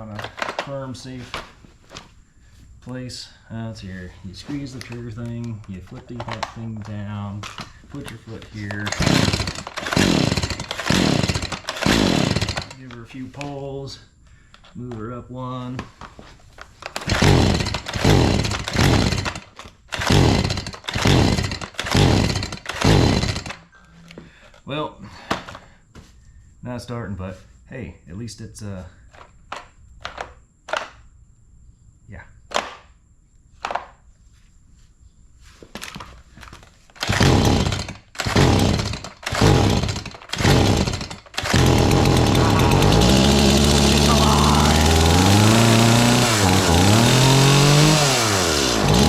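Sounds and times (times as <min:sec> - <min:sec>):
chainsaw recoil starter pulls: 0:00.0 - 0:00.8, 0:04.8 - 0:13.5, 0:16.8 - 0:23.6, 0:36.5 - 0:49.0
engine spinning over: 0:08.8 - 0:12.7, 0:17.0 - 0:19.4, 0:20.0 - 0:23.6, 0:37.0 - 0:49.0.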